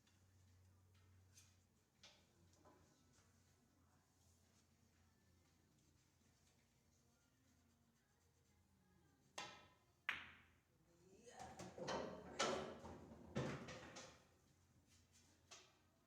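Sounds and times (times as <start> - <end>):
pool balls clacking: 11.6 - 14.2.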